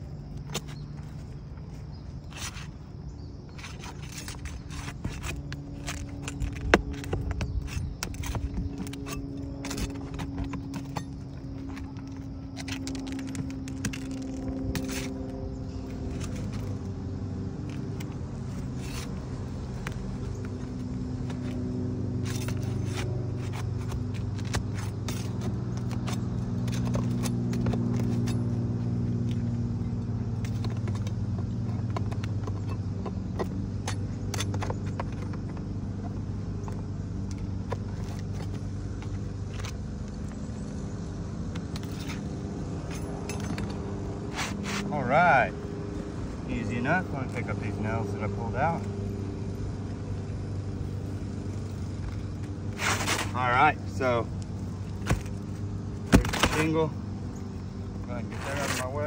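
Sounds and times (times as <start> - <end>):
clicks and scrapes on roof: 0.4 - 15.4, 52.7 - 54.1, 58.1 - 59.0.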